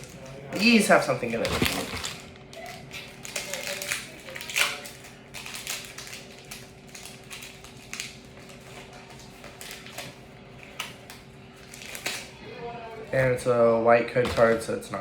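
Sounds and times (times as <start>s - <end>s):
foil wrapper crinkling and tearing: 0.0s - 12.3s.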